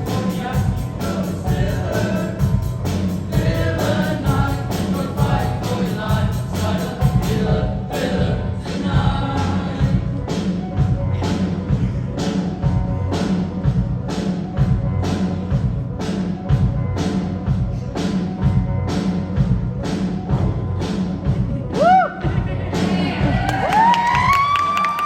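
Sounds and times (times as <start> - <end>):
girls' choir singing: 0.0 - 10.4
music with steady beat: 0.0 - 24.7.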